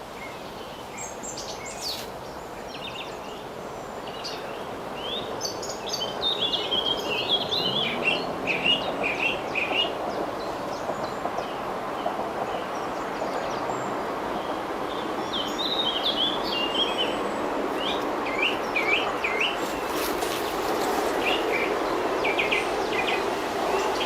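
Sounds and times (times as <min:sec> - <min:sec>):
steady rushing background noise: 0:00.1 - 0:24.0
small birds singing: 0:00.2 - 0:24.0.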